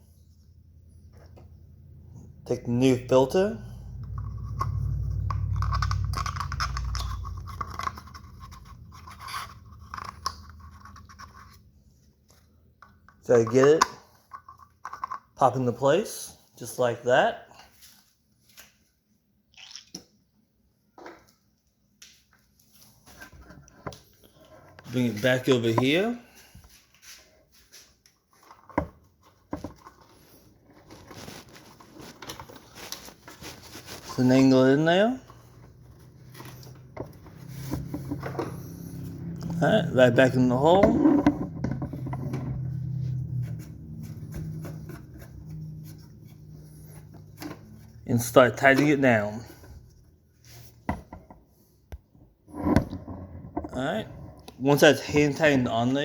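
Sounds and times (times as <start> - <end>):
low rumble: 3.6 - 9.6
oil filter scratching and rustling: 3.6 - 15.3, 24.1 - 50.9.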